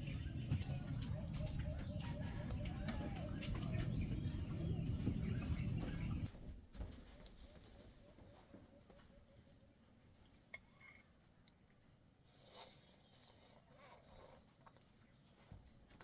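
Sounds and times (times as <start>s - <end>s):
faint chirps: 0.0s - 6.3s
low rumble: 0.0s - 6.3s
constant high-pitched whine: 0.0s - 12.0s.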